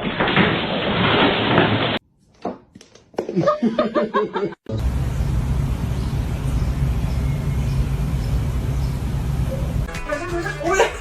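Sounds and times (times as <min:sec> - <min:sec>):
low rumble of background noise: 0:04.7 - 0:09.9.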